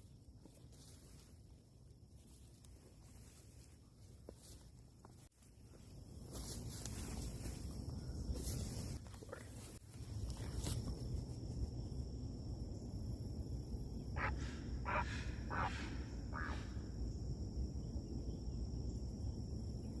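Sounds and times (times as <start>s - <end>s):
heron harsh calls: 14.2s - 16.7s.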